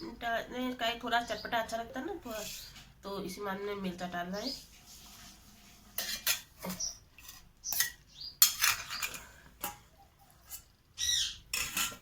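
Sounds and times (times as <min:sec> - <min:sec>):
metal spoon clinking on pot: 0:07.7 - 0:09.9, 0:11.5 - 0:12.0.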